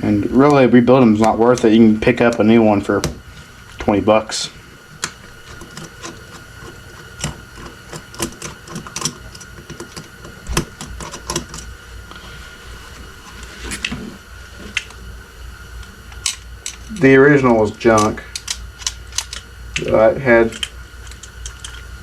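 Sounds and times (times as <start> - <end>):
hand tools clicking and knocking: 5.0 - 11.7.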